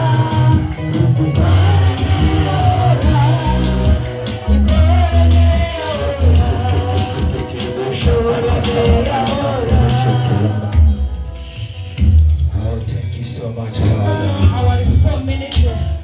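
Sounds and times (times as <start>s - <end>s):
person singing: 0.0s - 11.4s, 12.5s - 16.0s
worship band playing: 0.0s - 16.0s.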